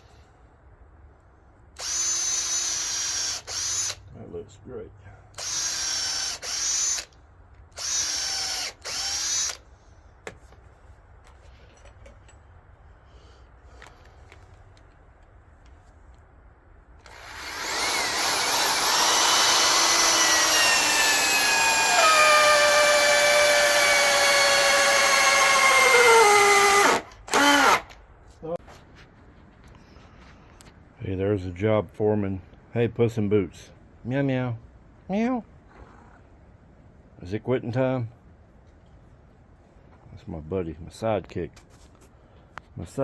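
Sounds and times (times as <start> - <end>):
electric drill whining: 1.8 - 4.0, 5.4 - 9.7, 17.0 - 28.0.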